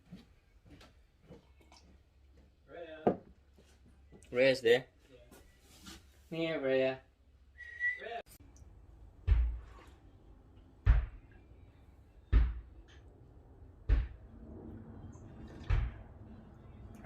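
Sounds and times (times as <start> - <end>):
dull heavy thumps: 10.8 - 11.2, 12.3 - 12.8, 13.8 - 14.2.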